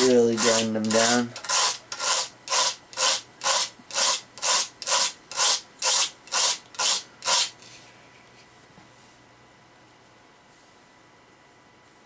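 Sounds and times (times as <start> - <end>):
knife scraping on sharpener: 0.0 - 7.8.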